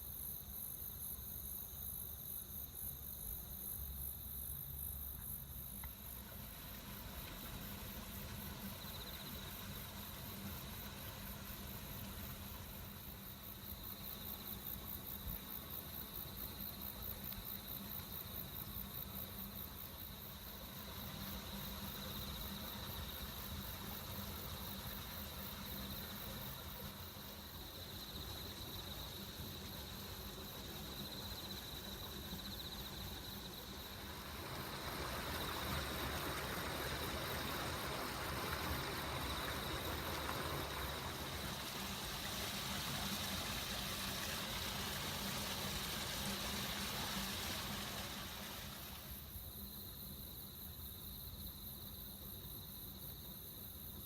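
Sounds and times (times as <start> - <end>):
insects chirping: 0.0 - 54.0
electric train passing: 17.6 - 49.4.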